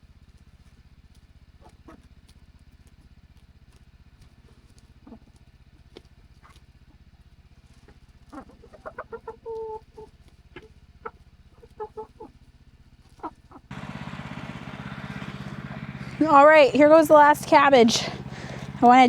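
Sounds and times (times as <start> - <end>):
chickens clucking: 5.0 - 5.4, 7.8 - 12.3, 13.1 - 19.0
motor hum: 13.7 - 19.0.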